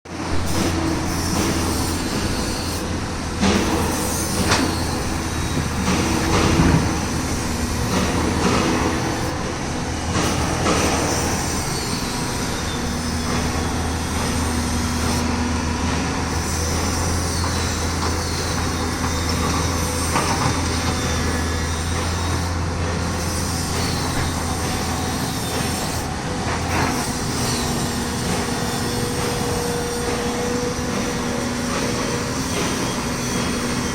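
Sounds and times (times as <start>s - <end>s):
heavy machinery drone: 0.1s - 33.9s
high squealing glides: 0.2s - 33.9s
metal knocks and clanks: 3.4s - 9.3s.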